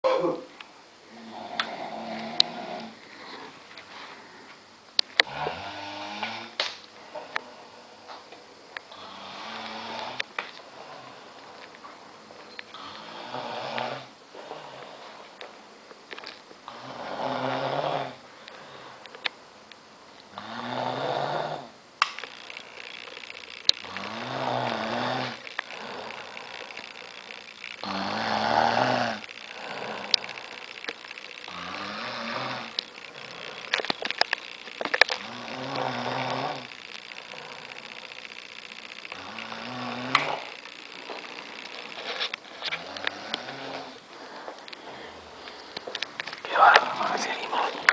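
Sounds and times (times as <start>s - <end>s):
man snoring: 1.1s - 3.5s, 5.2s - 6.6s, 8.9s - 10.2s, 12.7s - 15.0s, 16.7s - 18.2s, 20.3s - 21.8s, 23.8s - 26.6s, 27.8s - 30.6s, 31.5s - 33.7s, 35.2s - 36.7s, 39.1s - 40.6s, 42.8s - 44.0s, 46.5s - 47.9s.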